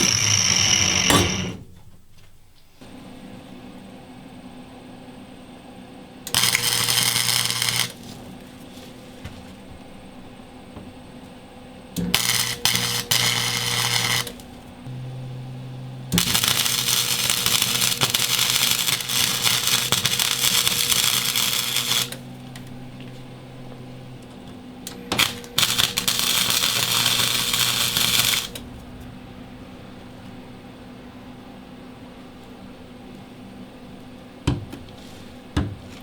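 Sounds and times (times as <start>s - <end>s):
arc welder crackling: 0.0s - 1.6s, 6.2s - 9.6s, 11.9s - 30.7s
low electrical hum: 0.0s - 36.0s.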